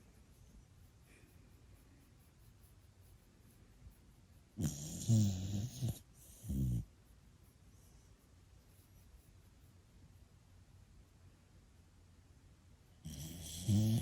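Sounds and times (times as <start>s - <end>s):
dog snoring: 4.6s - 6.9s, 13.0s - 14.0s.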